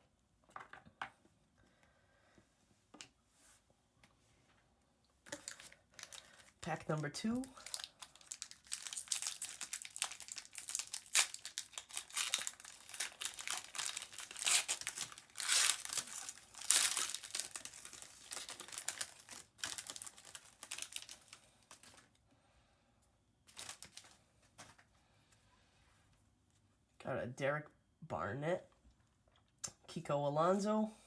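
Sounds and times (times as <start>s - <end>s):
plastic wrapper crinkling and tearing: 5.3s - 22.2s, 23.5s - 24.2s.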